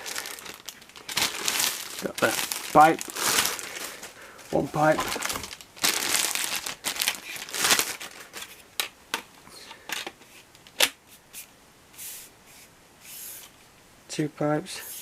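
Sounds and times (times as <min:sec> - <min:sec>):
plastic packaging crinkling: 0:00.0 - 0:09.0.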